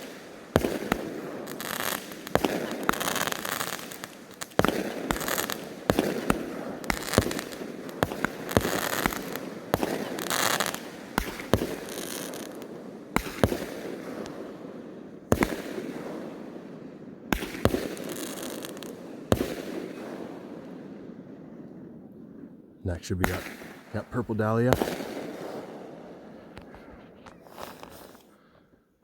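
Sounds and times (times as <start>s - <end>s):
fireworks bangs and crackling: 0.0s - 28.6s.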